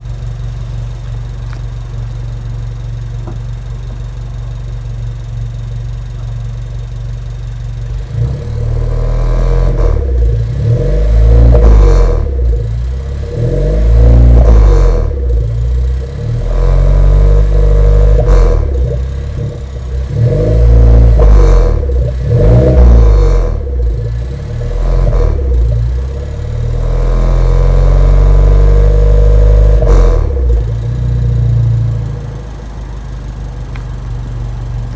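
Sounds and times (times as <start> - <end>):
car exhaust idling and revving: 0.0 - 34.9
metal scraping inside muffler: 7.9 - 32.4.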